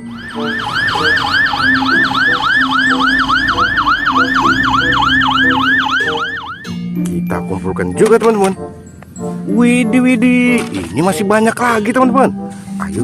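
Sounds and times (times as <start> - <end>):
fire engine yelp siren: 0.0 - 6.8.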